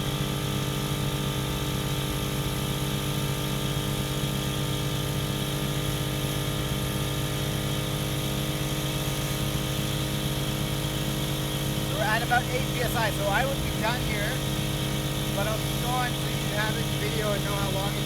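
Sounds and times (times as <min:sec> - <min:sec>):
air compressor humming: 0:09.1 - 0:18.0.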